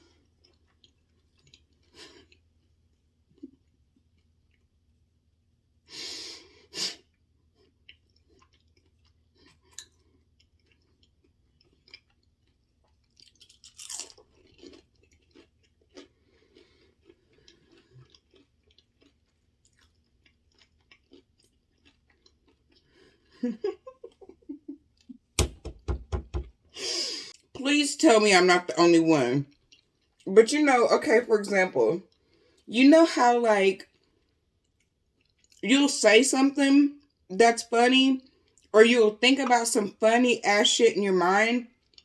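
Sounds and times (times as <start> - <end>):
close chewing food: 0.0 - 5.0, 6.4 - 25.3, 29.4 - 30.3, 32.0 - 32.7, 33.8 - 35.6, 38.2 - 38.7, 41.7 - 42.0
loud thump: 25.4 - 26.5.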